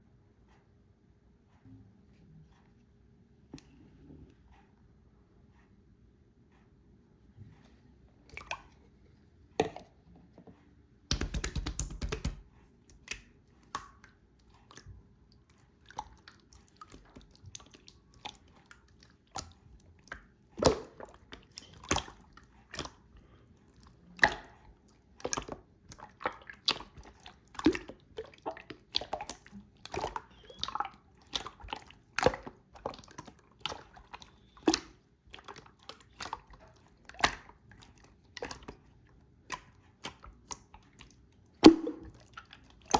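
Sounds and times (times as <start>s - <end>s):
slime sticky pops: 11.1s - 12.4s.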